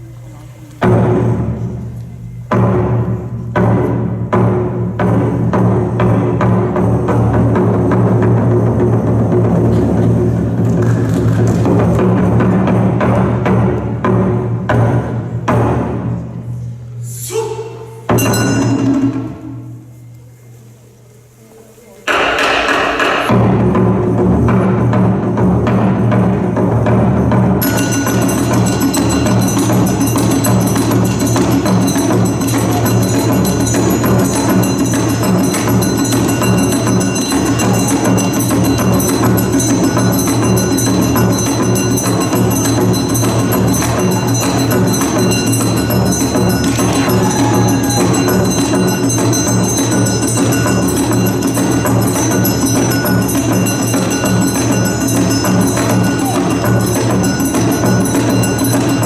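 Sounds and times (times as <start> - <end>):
dance music with percussive beat: 18.1 - 19.5, 22.1 - 59.0.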